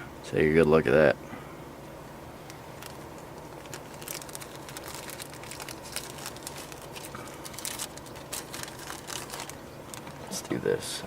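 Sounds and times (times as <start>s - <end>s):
steady low hum: 0.0s - 11.0s
handling clicks and crinkling: 2.4s - 10.6s.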